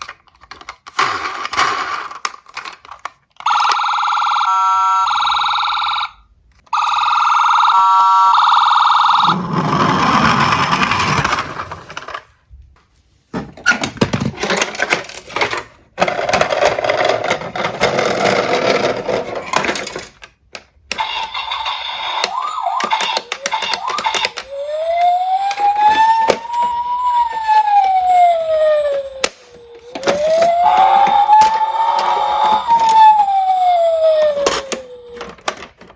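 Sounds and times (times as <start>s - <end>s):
toys clattering and rattling: 0.0s - 4.4s, 9.3s - 12.4s, 13.3s - 28.2s, 28.9s - 35.9s
toy electronic siren: 3.4s - 11.0s, 20.9s - 35.5s.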